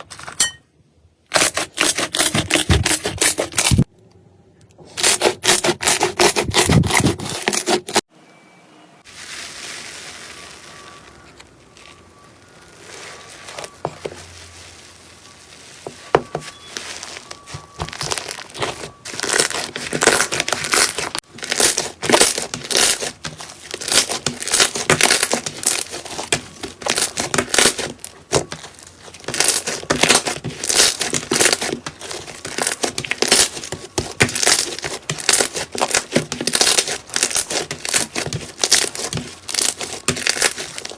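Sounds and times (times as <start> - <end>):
slime crackling and popping: 9.9 - 15.8, 16.8 - 40.9.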